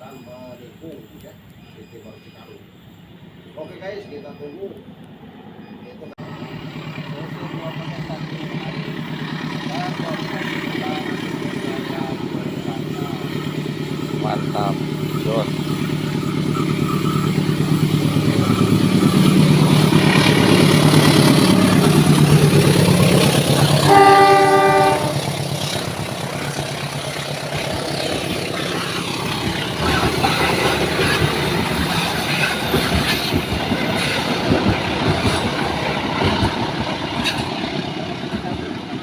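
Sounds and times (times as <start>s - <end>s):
locomotive engine running: 0.0s - 39.0s
train wheels clacking over rail joints: 6.9s - 39.0s
locomotive horn: 23.8s - 25.4s.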